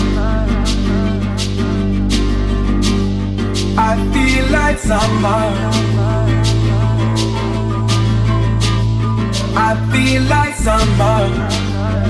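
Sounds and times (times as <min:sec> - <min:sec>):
mellow pop music: 0:00.0 - 0:12.0.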